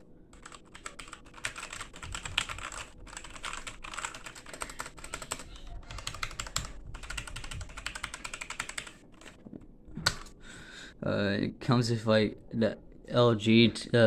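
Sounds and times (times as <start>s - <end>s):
mechanical keyboard typing: 0.4s - 9.4s.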